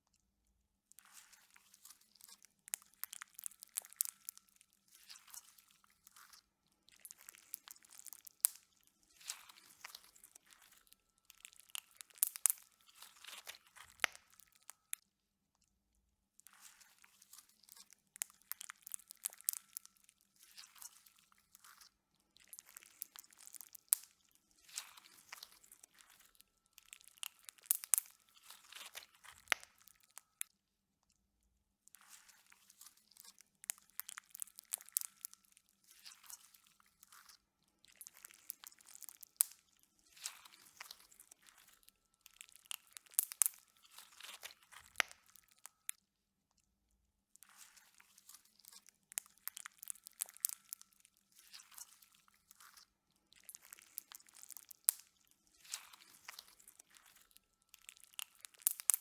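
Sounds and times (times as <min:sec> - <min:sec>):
slime squishing and popping: 0:11.6 - 0:14.7, 0:24.7 - 0:30.2, 0:33.6 - 0:35.4, 0:40.2 - 0:45.6, 0:49.1 - 0:50.8, 0:57.8 - 0:59.0.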